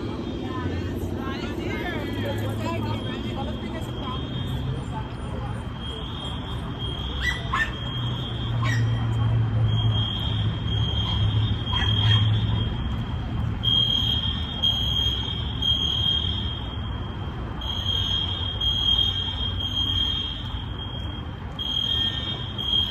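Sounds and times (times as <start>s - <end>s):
fire alarm beeping: 2.5s - 22.9s.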